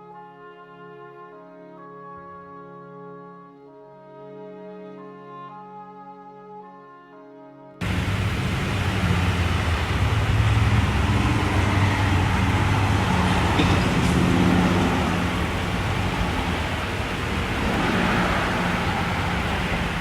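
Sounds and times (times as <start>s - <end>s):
brass music: 0.0s - 20.0s
vehicle road noise: 7.8s - 20.0s.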